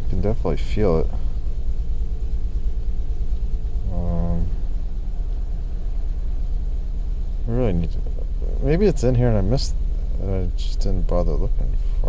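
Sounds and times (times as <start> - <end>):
car engine idling with misfire: 0.0 - 12.0
short pitched hum: 1.0 - 12.0.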